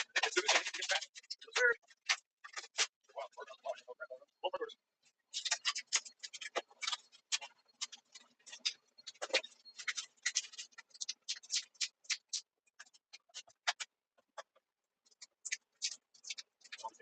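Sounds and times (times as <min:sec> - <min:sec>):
rapid clicking and clattering: 0:00.0 - 0:03.0, 0:05.3 - 0:17.0.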